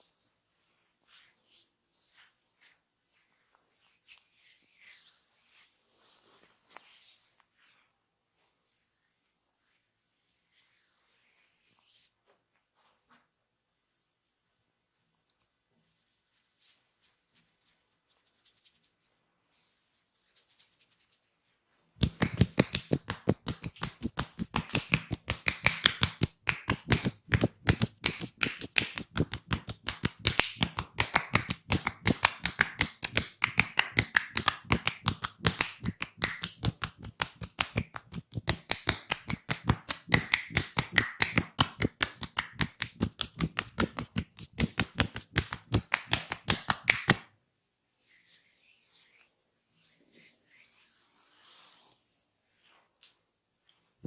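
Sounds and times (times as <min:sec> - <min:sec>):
hands slapping body in massage: 0:22.0 - 0:47.3.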